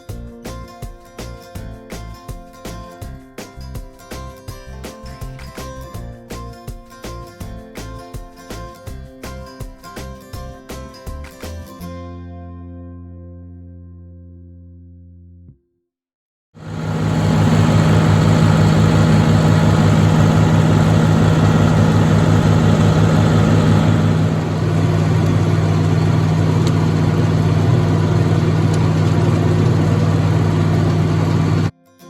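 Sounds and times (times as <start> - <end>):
tractor engine running: 16.6 - 31.7.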